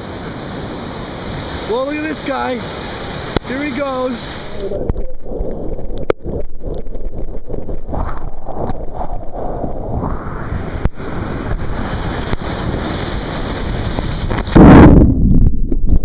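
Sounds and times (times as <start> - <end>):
ocean surf washing: 0.0 - 14.8
wind buffeting microphone: 7.7 - 16.0.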